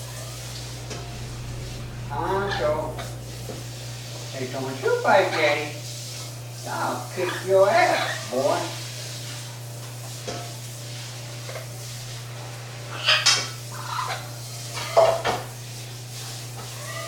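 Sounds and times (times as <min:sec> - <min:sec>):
parrots squawking and chattering: 0:00.0 - 0:03.2, 0:06.7 - 0:08.8, 0:12.8 - 0:15.5, 0:16.3 - 0:17.0
steady low hum: 0:00.0 - 0:08.3.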